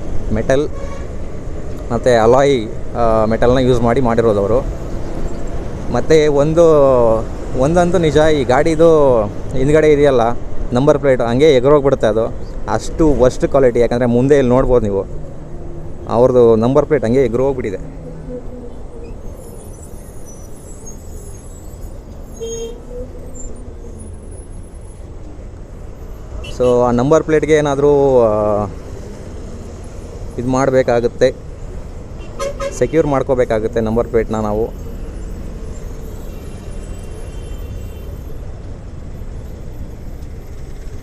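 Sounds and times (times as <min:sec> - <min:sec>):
traffic and wind rumble: 0:00.0 - 0:41.0
brief high tone: 0:17.8 - 0:20.3.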